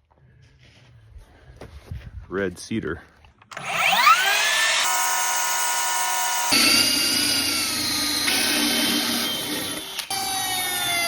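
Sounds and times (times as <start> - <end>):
band saw whine: 3.5 - 11.0
saw blade cutting log: 3.5 - 11.0.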